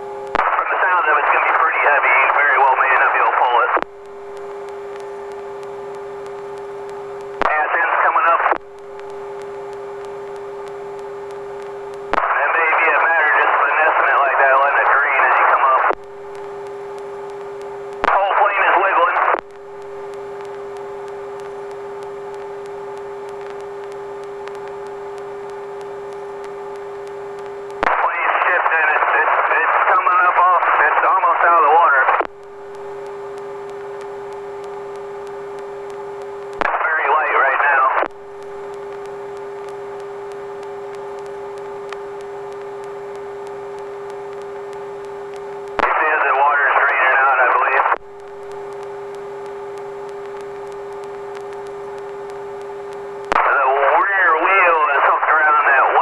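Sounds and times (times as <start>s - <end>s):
intercom hum with hiss: 0.0s - 56.0s
faint ticking: 3.8s - 7.5s, 8.5s - 12.2s, 15.9s - 18.1s, 19.3s - 27.9s, 32.2s - 36.7s, 38.0s - 45.8s, 47.9s - 53.4s.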